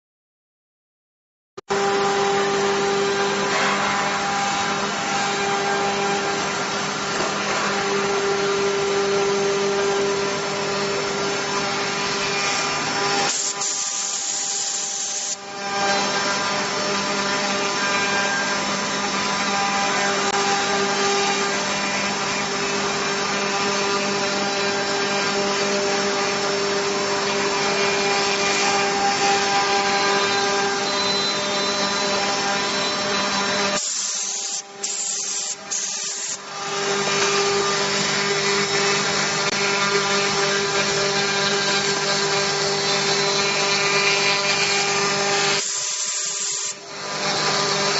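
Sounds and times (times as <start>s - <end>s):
router spindle whine: 1.7s - 47.9s
rasping of cutting: 30.2s - 47.9s.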